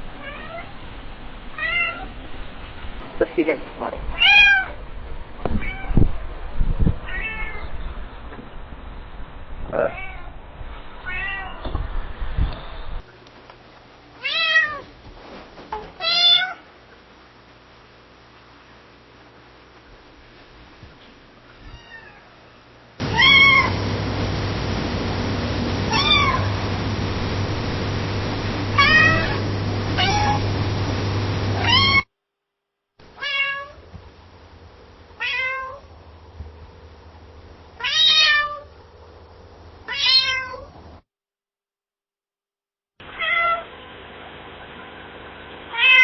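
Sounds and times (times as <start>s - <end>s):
cat meowing: 0.2s - 0.8s, 1.6s - 2.1s, 4.2s - 4.8s, 5.6s - 6.0s, 7.0s - 7.7s, 9.9s - 10.3s, 11.0s - 11.6s, 21.6s - 22.4s, 23.0s - 23.7s, 25.9s - 26.5s, 28.8s - 29.4s, 30.0s - 30.5s, 31.6s - 32.0s, 33.2s - 33.8s, 35.2s - 35.8s, 37.8s - 38.7s, 39.9s - 40.7s, 43.2s - 43.7s, 45.7s - 46.0s
steady background noise: 22.6s - 31.9s.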